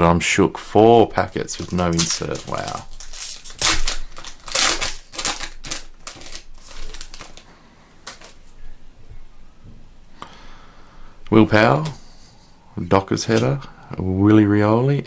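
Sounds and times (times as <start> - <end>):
foil wrapper crinkling: 1.1 - 8.6.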